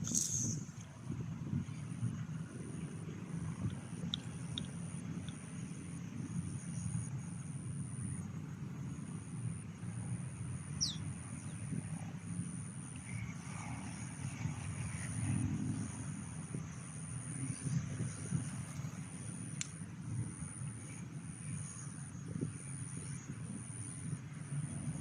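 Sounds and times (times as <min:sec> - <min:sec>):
pulsing insect trill: 0:00.0 - 0:00.9, 0:02.6 - 0:25.0
descending bird whistle: 0:10.8 - 0:11.0.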